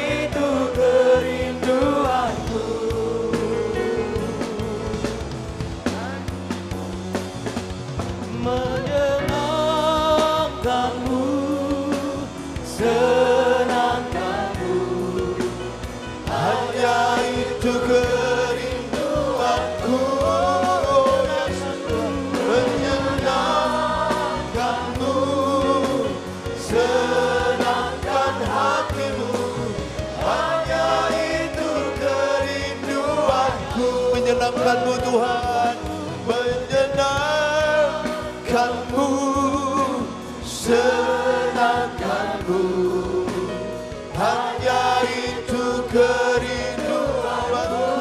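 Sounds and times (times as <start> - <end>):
band playing: 0.0 - 48.0
group singing worship song: 0.0 - 48.0.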